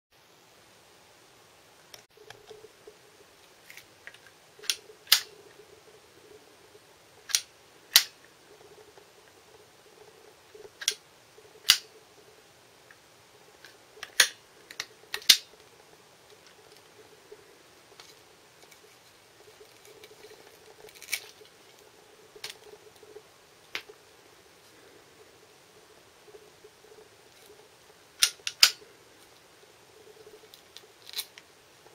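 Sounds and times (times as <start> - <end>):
faint steady hum: 0.2 - 31.9.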